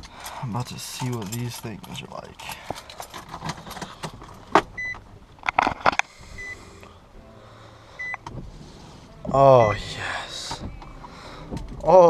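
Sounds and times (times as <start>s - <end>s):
car warning chime beeping: 4.8s - 5.0s, 6.3s - 6.9s, 8.0s - 8.4s, 9.1s - 11.0s
clicks and knocks inside car: 10.5s - 12.0s.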